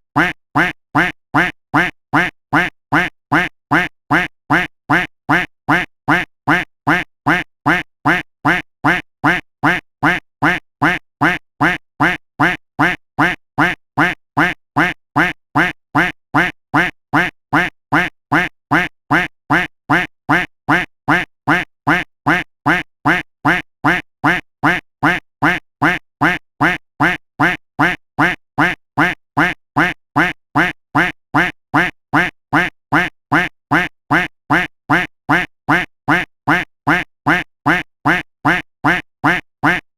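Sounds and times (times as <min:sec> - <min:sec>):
duck quacking: 0:00.2 - 0:39.9.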